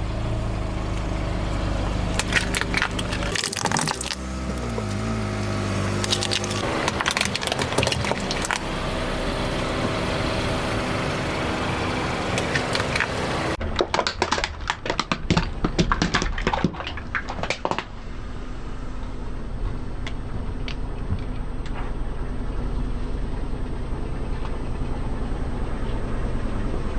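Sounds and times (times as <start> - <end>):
car engine running: 0.0 - 13.6, 14.6 - 26.9
objects crunching under tyres: 0.3 - 19.0.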